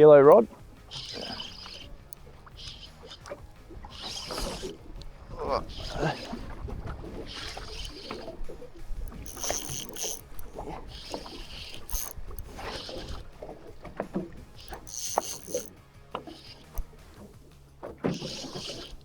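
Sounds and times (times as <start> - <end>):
water splashing against boat hull: 0.0 - 19.0
wind rumble on microphone: 3.4 - 9.3.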